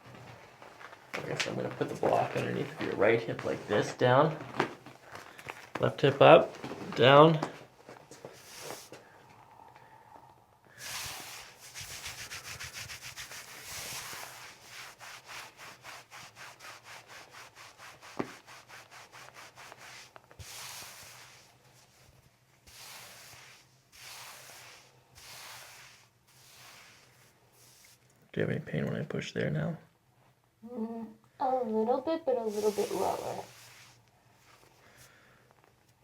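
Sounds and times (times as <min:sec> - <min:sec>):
hands rubbing over clothing: 0:08.2 - 0:09.0, 0:10.8 - 0:28.0, 0:32.4 - 0:35.1.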